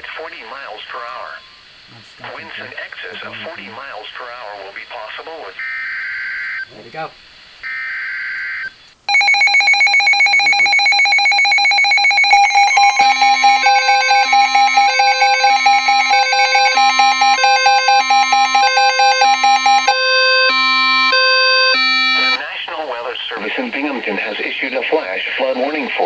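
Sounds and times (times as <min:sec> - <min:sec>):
two-tone alarm: 0:07.6 - 0:22.4
rapidly pulsing electronic beep: 0:09.1 - 0:22.4
steady electronic tone: 0:10.4 - 0:22.4.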